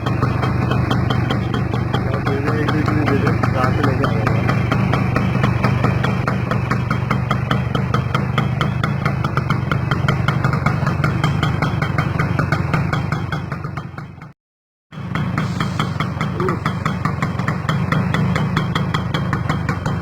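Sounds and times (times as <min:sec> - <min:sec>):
motorcycle engine idling: 0:00.0 - 0:14.3, 0:14.9 - 0:20.0.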